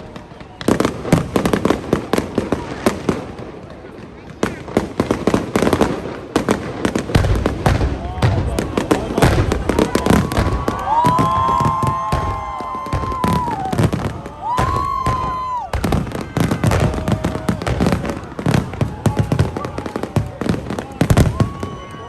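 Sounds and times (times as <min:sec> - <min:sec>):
fireworks bangs and crackles: 0:00.0 - 0:22.0
fireworks whistling: 0:04.4 - 0:22.0.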